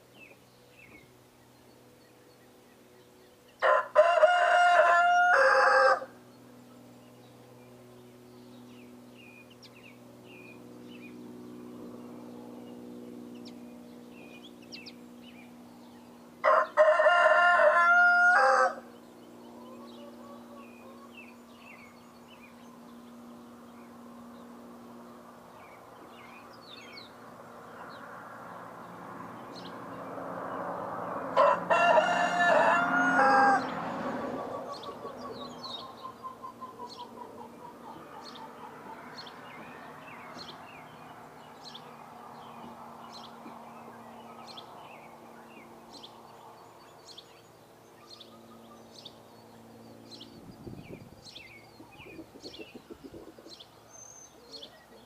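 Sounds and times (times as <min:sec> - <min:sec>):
small birds chirping: 0:00.0 - 0:03.7, 0:06.1 - 0:16.8, 0:18.8 - 0:31.4, 0:32.9 - 0:55.0
rooster crowing: 0:03.6 - 0:06.2, 0:16.4 - 0:18.9, 0:31.4 - 0:35.0.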